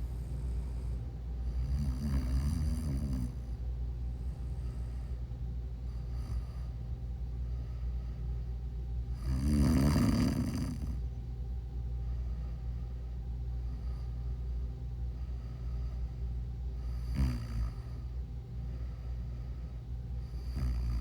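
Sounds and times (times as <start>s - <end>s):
person snoring: 0.0s - 3.5s, 9.2s - 11.0s, 16.9s - 17.9s, 20.4s - 21.0s.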